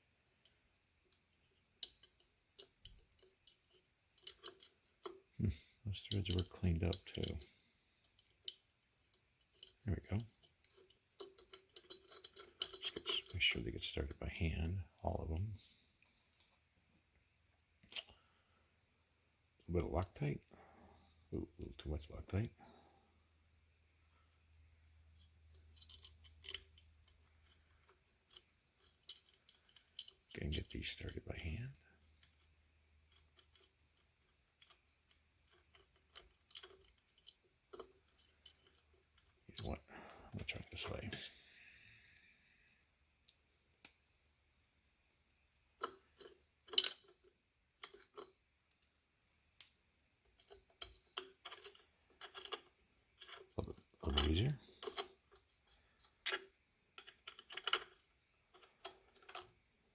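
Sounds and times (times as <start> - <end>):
small metal parts clicking: 0.4 - 5.3, 6.0 - 14.0, 25.1 - 31.2, 32.0 - 39.8, 45.8 - 49.0, 49.6 - 59.6.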